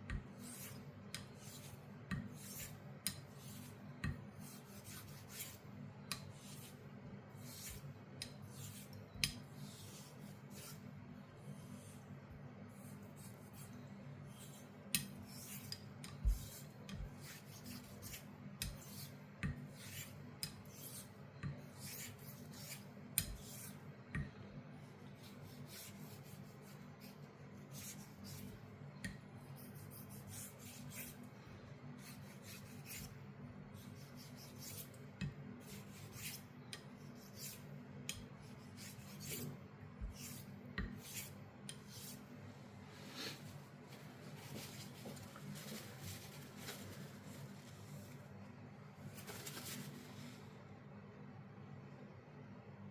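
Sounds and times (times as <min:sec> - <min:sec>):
razor blade scraping on stone: 0:37.1 - 0:37.7, 0:38.5 - 0:39.5.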